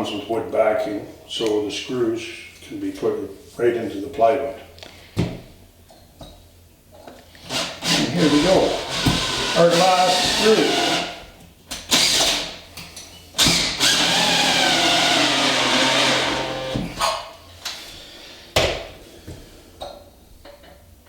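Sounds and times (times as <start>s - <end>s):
drill driving screw: 7.4s - 11.2s, 11.9s - 12.6s, 13.4s - 17.0s.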